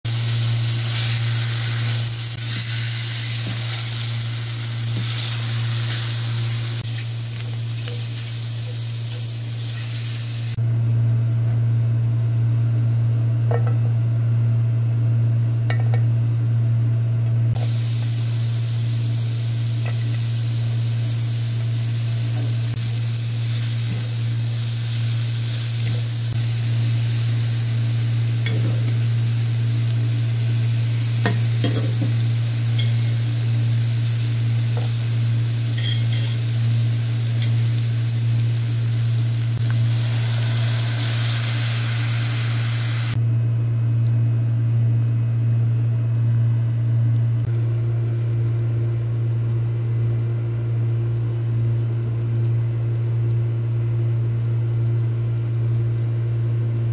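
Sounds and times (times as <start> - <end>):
food sizzling in a pan: 0.1 - 10.6, 17.5 - 43.2
steady low hum: 0.1 - 56.9.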